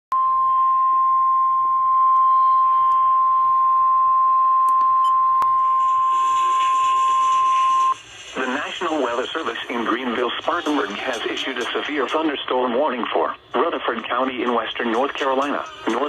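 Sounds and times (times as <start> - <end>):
faint radio hiss: 5.6 - 16.0.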